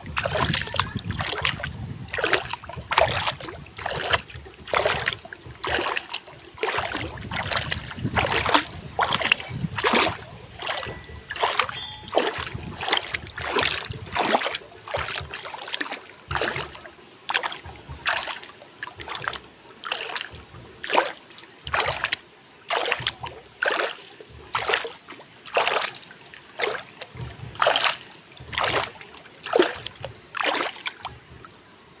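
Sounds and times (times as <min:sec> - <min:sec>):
water lapping and splashing: 0:00.0 - 0:32.0.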